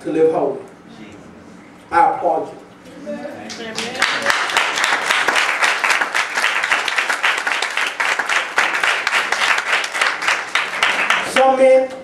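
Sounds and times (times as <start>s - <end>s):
crowd applauding: 3.5s - 11.4s.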